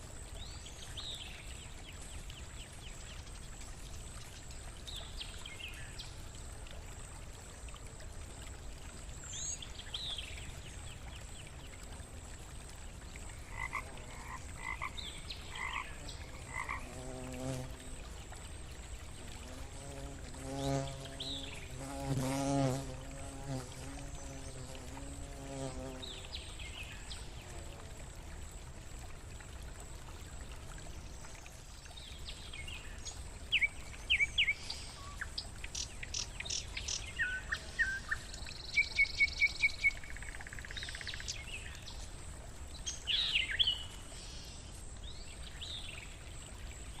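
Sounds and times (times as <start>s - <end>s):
forest stream gurgling: 0.0s - 47.0s
bumblebee buzzing: 16.8s - 18.0s, 19.2s - 26.2s.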